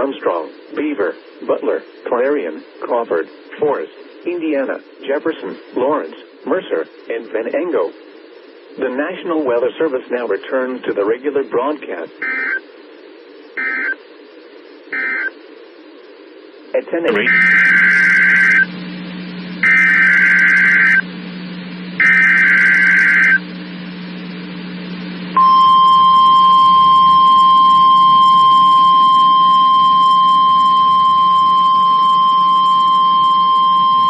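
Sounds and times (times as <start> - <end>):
low receiver hum: 0.0 - 34.0
steady alarm tone: 12.2 - 12.6, 13.6 - 14.0, 14.9 - 15.3, 17.1 - 19.0, 19.6 - 21.1, 21.9 - 23.5, 25.3 - 34.0
warbling digital data bursts: 13.6 - 14.0, 14.9 - 15.3, 17.2 - 18.7, 19.6 - 21.0, 22.0 - 23.4.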